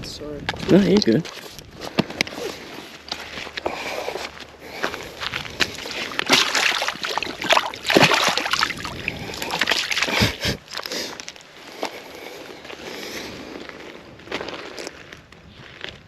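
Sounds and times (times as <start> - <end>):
water splashing and sloshing: 3.9 - 11.0
fish thrashing in water: 4.8 - 11.2.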